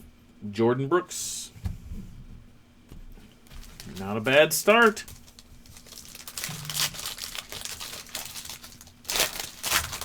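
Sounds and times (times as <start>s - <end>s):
wrapper tearing and crinkling: 3.6s - 10.0s.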